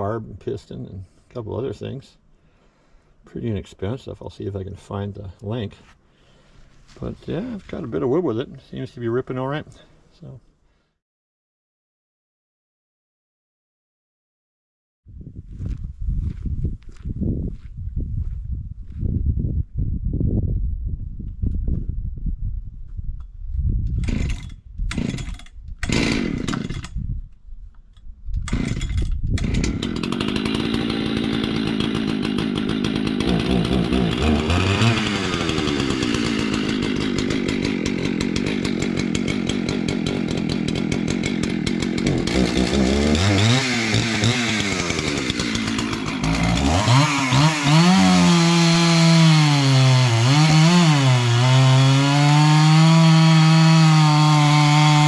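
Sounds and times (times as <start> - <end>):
chainsaw cutting wood: 24.0 - 27.0, 28.4 - 55.0.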